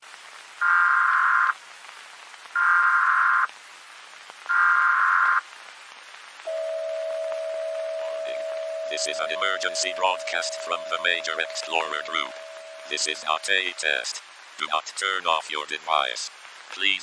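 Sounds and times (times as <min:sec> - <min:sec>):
steady hiss: 0:00.0 - 0:17.0
steady attention tone: 0:06.5 - 0:14.0
warbling data tones: 0:06.5 - 0:14.0.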